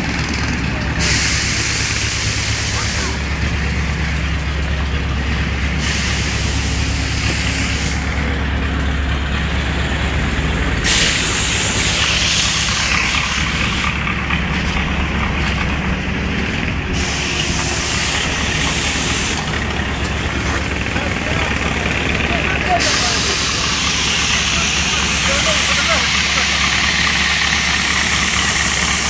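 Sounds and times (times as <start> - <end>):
diesel machinery humming: 0.0 - 29.0
loud hiss: 1.0 - 3.3, 5.7 - 8.2, 10.8 - 14.8, 16.9 - 20.0, 22.8 - 29.0.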